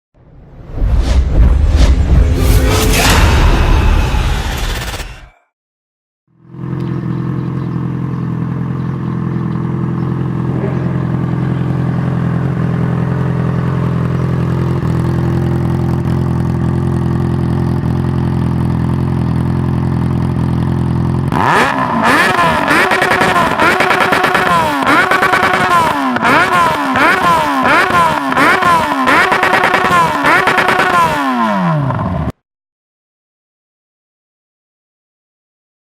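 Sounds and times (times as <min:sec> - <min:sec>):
motorcycle engine idling and revving: 0:06.3 - 0:32.4.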